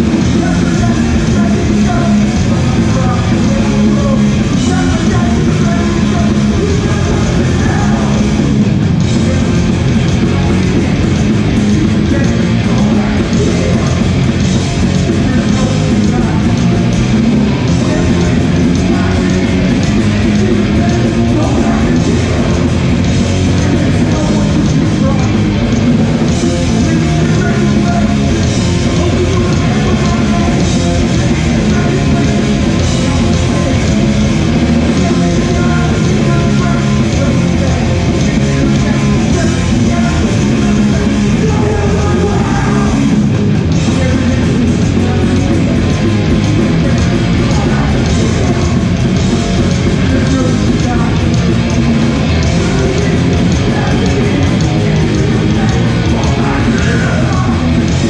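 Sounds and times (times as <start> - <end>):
punk band playing live: 0.0 - 58.0.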